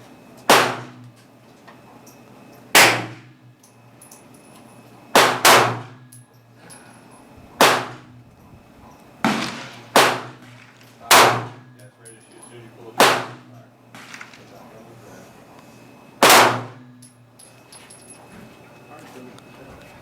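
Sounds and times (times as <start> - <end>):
gunshots with echo: 5.2 - 5.9, 7.6 - 8.1, 9.2 - 11.6, 13.0 - 14.4, 16.2 - 16.8.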